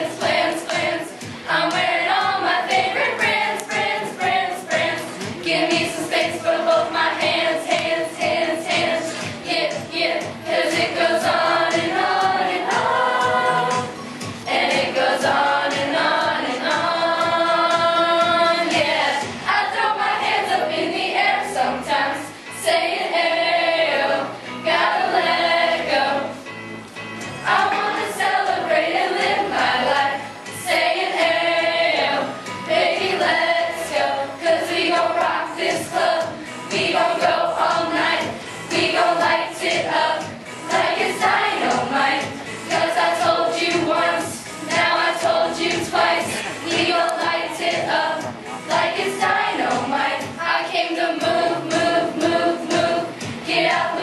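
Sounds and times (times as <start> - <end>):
choir singing: 0.0 - 26.4, 27.4 - 54.0
backing music: 0.0 - 54.0.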